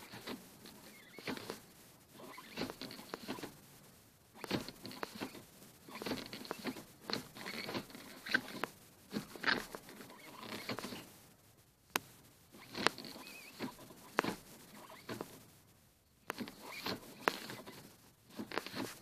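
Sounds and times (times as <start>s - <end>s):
gear lever creaking and squeaking: 2.2s - 3.5s, 4.4s - 8.6s, 9.4s - 11.0s, 16.3s - 17.8s.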